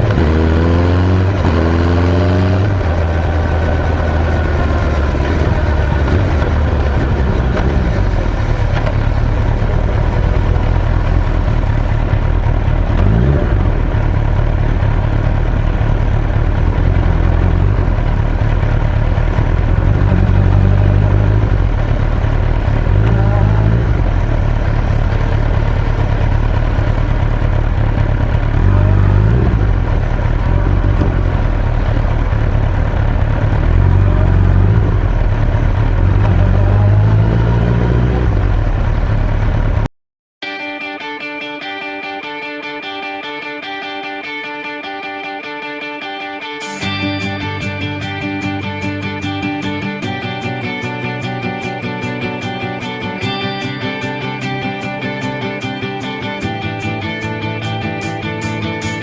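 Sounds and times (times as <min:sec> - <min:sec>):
motorcycle engine running: 0:00.0 - 0:39.9, 0:46.6 - 0:59.0
wind and road noise: 0:00.0 - 0:39.9.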